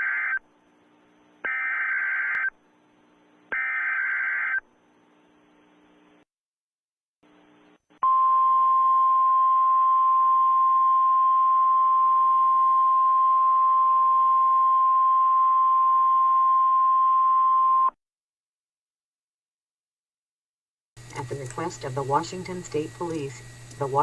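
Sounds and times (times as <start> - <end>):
faint static: 0.0 - 6.3, 7.2 - 9.0.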